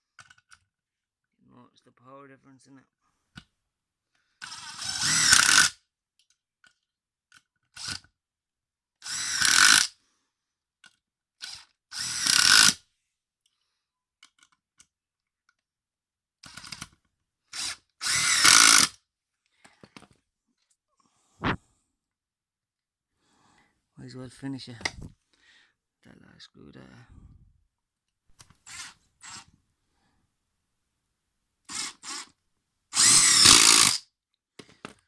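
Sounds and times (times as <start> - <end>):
impact driver driving screws: 4.4 - 5.8, 9.0 - 9.9, 12.0 - 12.8, 17.6 - 19.0, 28.3 - 29.5, 31.7 - 32.3, 33.0 - 34.0
impact driver trigger blips: 18.0 - 18.9, 33.0 - 34.0.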